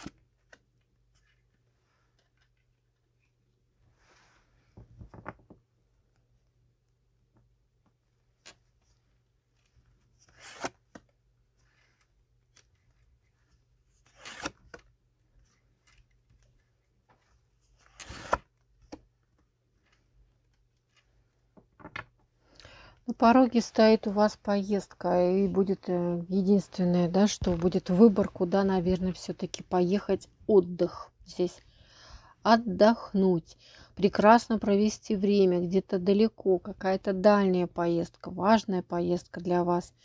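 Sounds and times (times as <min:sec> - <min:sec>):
cards being shuffled: 0:10.0 - 0:13.3, 0:13.9 - 0:19.1.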